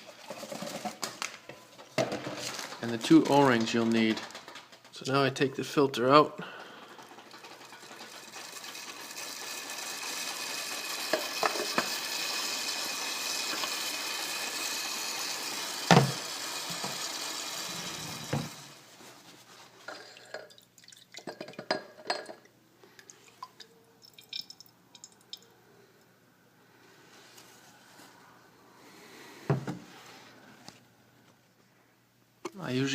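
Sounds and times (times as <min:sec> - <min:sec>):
small clicks and clatter: 0:02.2 - 0:05.1, 0:06.6 - 0:09.5
oil extractor hissing and gurgling: 0:07.2 - 0:18.8.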